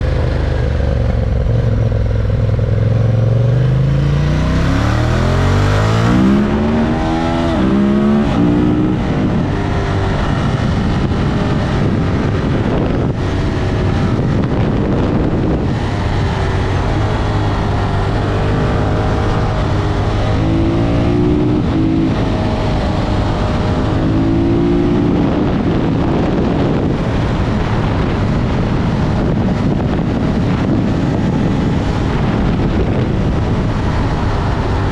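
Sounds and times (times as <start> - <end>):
motorcycle engine accelerating: 0.0 - 34.9
wind noise: 0.0 - 34.9.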